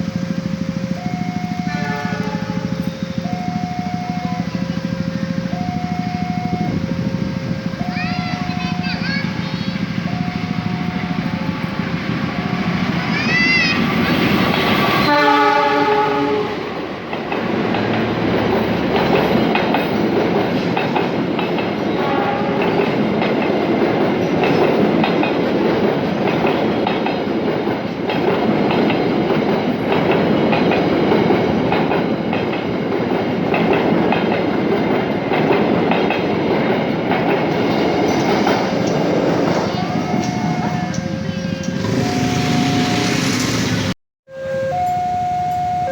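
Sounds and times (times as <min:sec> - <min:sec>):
train wheels clattering on rails: 0:00.0 - 0:44.0
train horn: 0:01.6 - 0:03.2, 0:15.0 - 0:16.8, 0:22.0 - 0:22.9.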